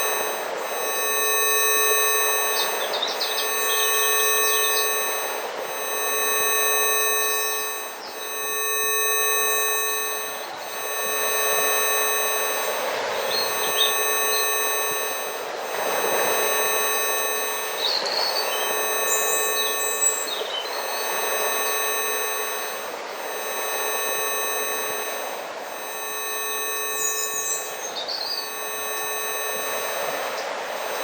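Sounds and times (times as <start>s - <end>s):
electronic tone with overtones: 0.0s - 31.0s
birds chirping: 2.2s - 5.2s, 13.2s - 15.0s, 17.6s - 21.4s, 27.0s - 28.6s.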